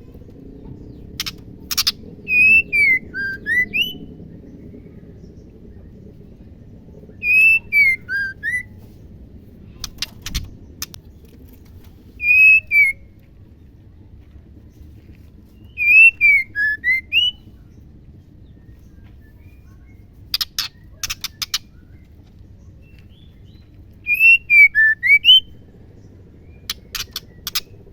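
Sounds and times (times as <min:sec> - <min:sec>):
bird whistling clear notes: 0:12.2 - 0:13.0, 0:15.8 - 0:17.4.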